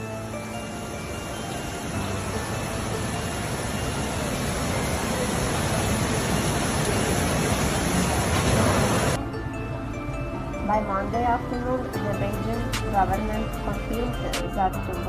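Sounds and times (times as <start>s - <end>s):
steady rushing noise: 0.0s - 9.2s.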